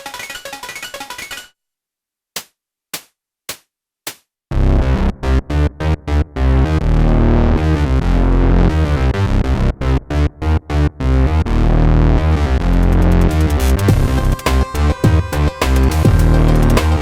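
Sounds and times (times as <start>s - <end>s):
deep bass synthesizer notes: 4.5s - 17.0s.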